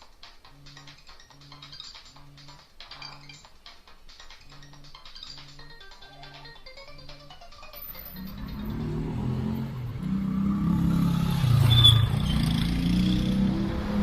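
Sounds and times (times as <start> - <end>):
vehicle engine running: 8.0 - 14.0.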